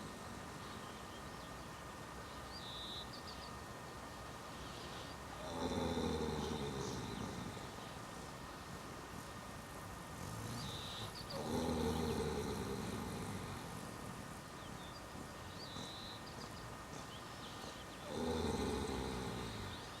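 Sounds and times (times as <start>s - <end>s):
horse snoring: 4.8s - 8.0s, 10.0s - 14.2s, 15.4s - 20.0s.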